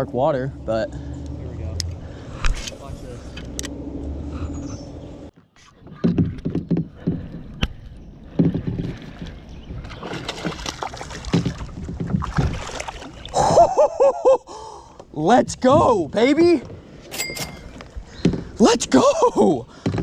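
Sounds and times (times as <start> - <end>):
water splashing: 8.4 - 13.6
knocks on kayak: 11.2 - 12.6.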